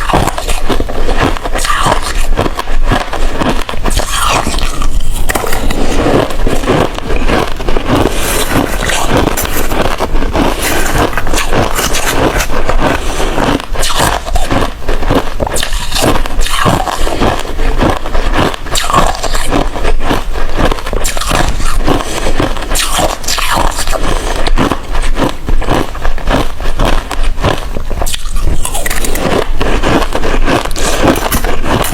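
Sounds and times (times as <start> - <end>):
ice being chewed: 0.0 - 31.9.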